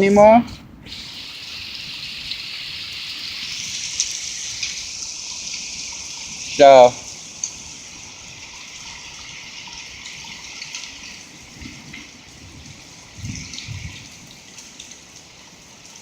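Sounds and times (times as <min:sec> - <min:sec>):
heavy rain pouring: 0:00.0 - 0:16.0
hail ticking: 0:00.9 - 0:06.7.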